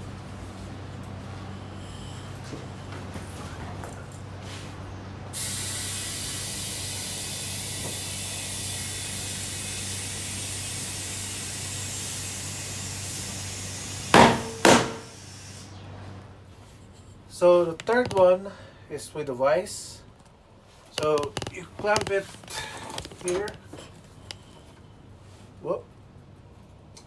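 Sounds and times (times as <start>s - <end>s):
compressed air hissing into tyre: 5.3s - 15.8s
loud sharp knocks: 14.2s - 15.1s.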